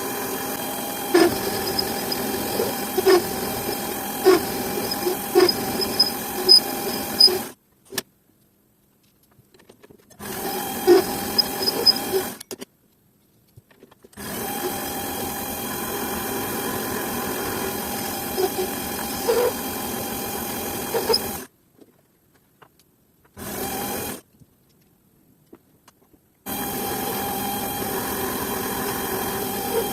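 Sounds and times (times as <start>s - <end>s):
small electric power tool running: 0.0s - 7.5s, 10.2s - 12.4s, 14.2s - 21.5s, 26.5s - 29.9s.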